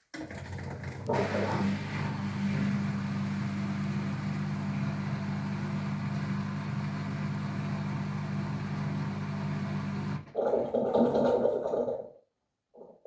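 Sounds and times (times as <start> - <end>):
washing machine humming: 0.2 - 10.3.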